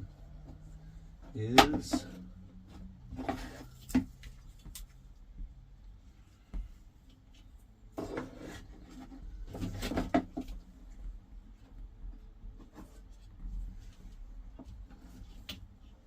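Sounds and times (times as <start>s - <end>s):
plastic parts scraping and clunking: 1.2s - 4.9s, 7.9s - 10.7s.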